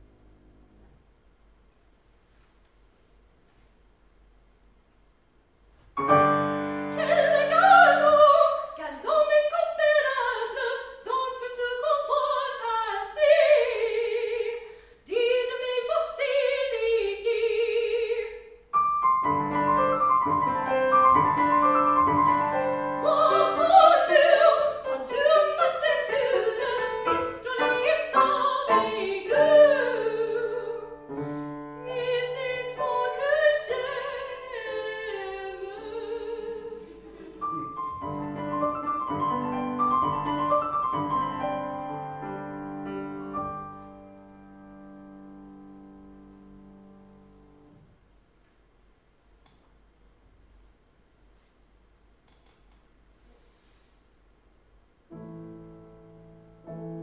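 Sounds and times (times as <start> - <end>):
piano accompaniment: 6.0 - 8.5, 18.8 - 35.8, 37.4 - 47.8, 55.1 - 57.0
operatic singing: 22.5 - 31.1, 31.8 - 38.8.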